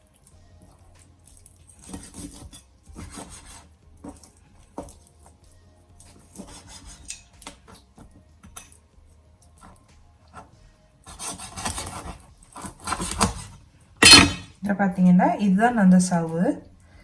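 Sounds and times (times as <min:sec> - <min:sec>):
knife cutting raw chicken: 0:01.7 - 0:05.0, 0:06.0 - 0:08.8, 0:09.6 - 0:14.4.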